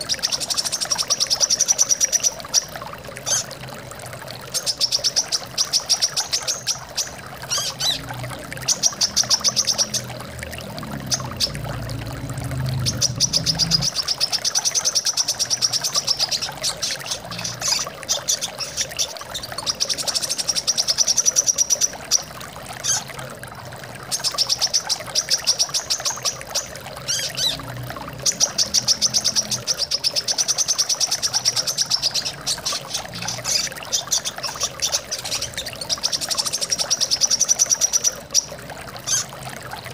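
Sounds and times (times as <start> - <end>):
flowing water: 0.0 - 39.9
bird trilling: 4.7 - 10.2.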